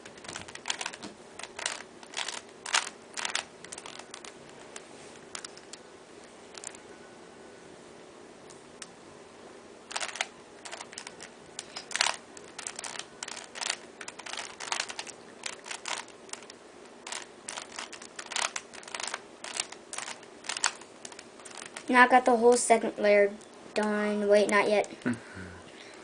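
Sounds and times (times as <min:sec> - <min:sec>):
plastic puzzle cube clicking: 0:00.1 - 0:04.4, 0:09.9 - 0:16.5, 0:17.1 - 0:21.9.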